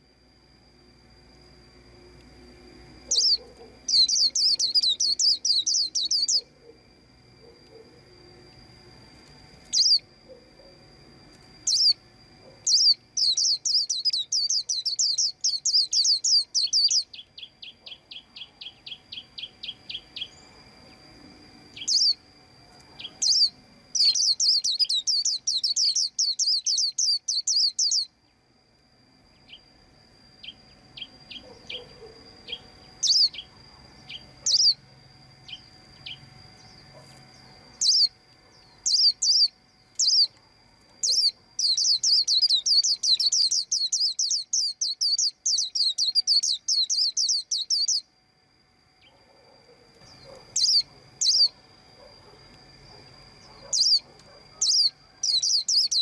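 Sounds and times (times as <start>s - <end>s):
bird chirping and trilling: 3.0s - 6.8s, 9.7s - 10.1s, 11.6s - 12.0s, 12.6s - 21.0s, 21.8s - 22.2s, 23.0s - 28.2s, 30.4s - 40.3s, 41.0s - 48.1s, 50.0s - 51.6s, 53.4s - 56.0s
soft rapid ticking calls: 3.1s - 6.5s, 12.6s - 18.9s, 23.0s - 28.1s, 41.0s - 48.0s.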